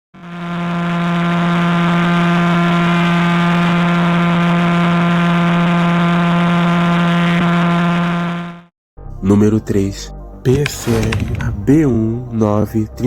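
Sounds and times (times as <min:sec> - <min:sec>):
steady buzzing tone: 0:00.2 - 0:08.7.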